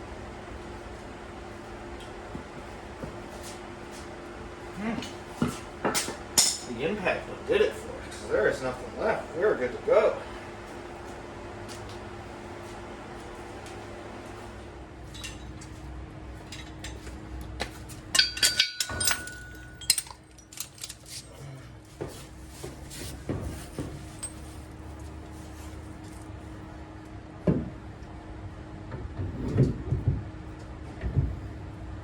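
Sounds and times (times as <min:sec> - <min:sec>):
steady low hum: 0:00.0 - 0:32.0
metal tools clinking: 0:18.1 - 0:21.4, 0:24.0 - 0:24.6.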